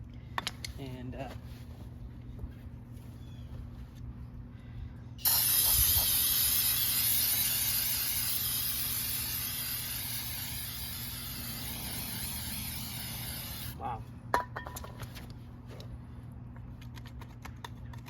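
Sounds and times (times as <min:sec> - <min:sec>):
pressurised spray hissing: 0:05.2 - 0:13.8.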